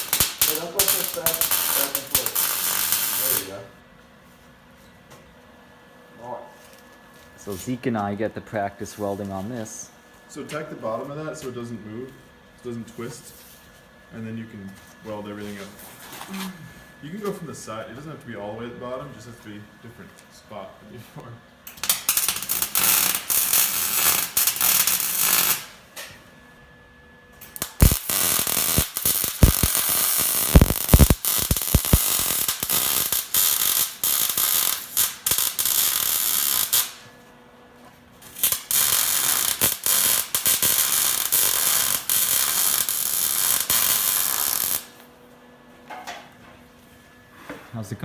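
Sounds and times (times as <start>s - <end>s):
arc welder crackling and sizzling: 0.0s - 3.7s, 21.6s - 26.2s, 27.4s - 45.4s.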